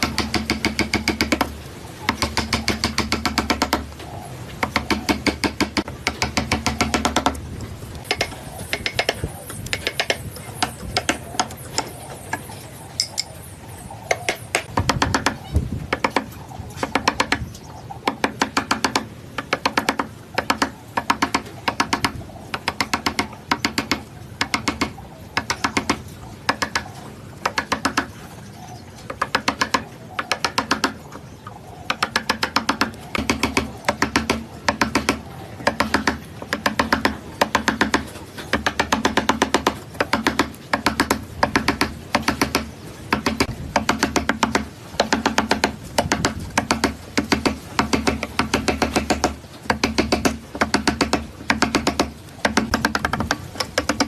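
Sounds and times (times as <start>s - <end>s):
rapid mechanical clicking bursts: 0.0s - 4.0s, 4.6s - 7.4s, 8.0s - 11.9s, 18.1s - 26.8s, 31.9s - 54.0s.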